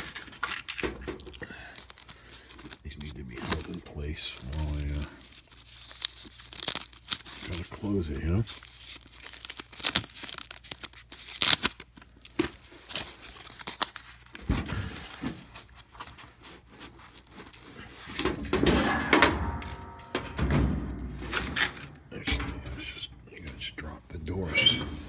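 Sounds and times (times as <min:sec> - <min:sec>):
padding crinkling and rustling: 0:00.0 - 0:25.0
clicks and knocks: 0:18.2 - 0:23.8, 0:24.4 - 0:25.0
brief squeak: 0:24.5 - 0:25.0.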